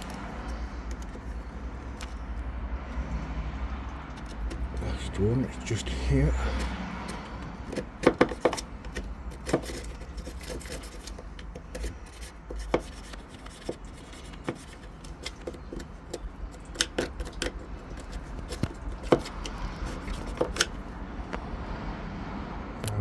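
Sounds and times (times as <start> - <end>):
screwdriver scraping metal: 4.2 - 20.9.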